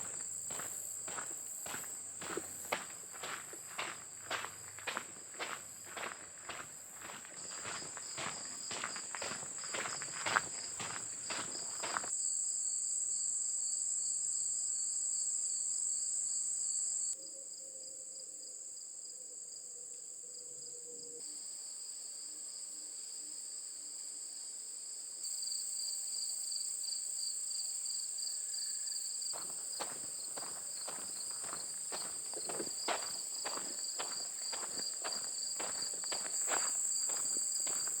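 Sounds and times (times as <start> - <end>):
footsteps: 0.0 - 12.1, 29.4 - 38.0
crickets and insects chirping: 0.0 - 38.0.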